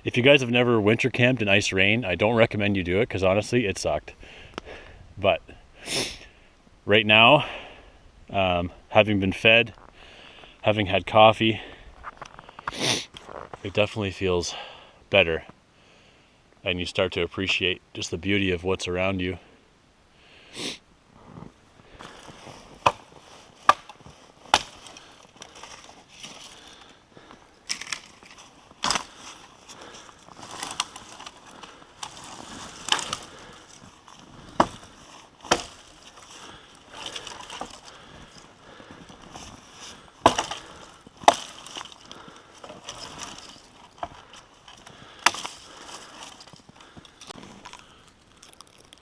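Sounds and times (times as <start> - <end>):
faint rustling and crunching: 9.4 - 14.3, 21.1 - 49.0
sharp cracks or knocks: 34.5 - 36.1.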